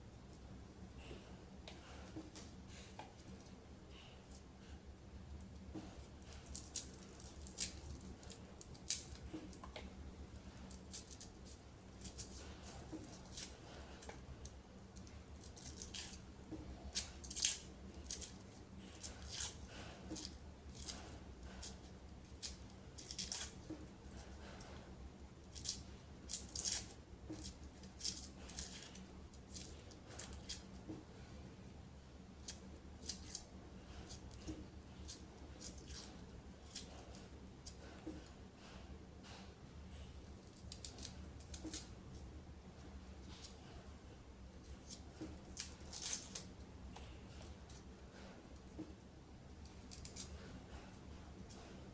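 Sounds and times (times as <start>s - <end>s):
faint steady hum: 0.0s - 51.9s
crisp snips and rustles: 44.5s - 48.9s.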